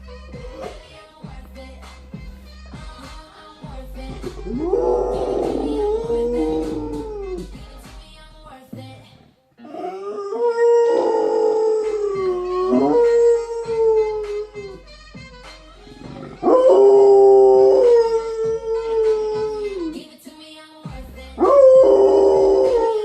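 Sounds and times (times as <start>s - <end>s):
dog howling: 4.5s - 7.4s, 9.6s - 14.8s, 16.0s - 20.0s, 21.4s - 23.0s.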